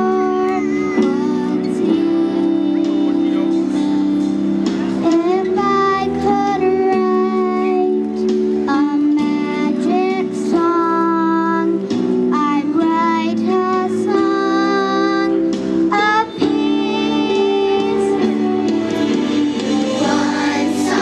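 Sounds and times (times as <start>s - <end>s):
children's choir singing: 0.0s - 4.1s, 13.5s - 21.0s
instrumental accompaniment: 0.0s - 21.0s.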